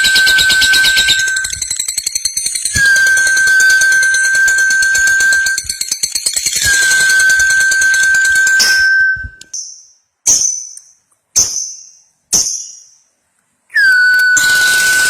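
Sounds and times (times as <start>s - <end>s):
steady high tone: 0.0s - 1.6s, 2.8s - 5.8s, 6.6s - 9.4s
bird rattling chatter: 0.0s - 8.6s
sharp ringing bird calls: 0.0s - 8.9s, 9.5s - 13.1s, 13.8s - 15.0s.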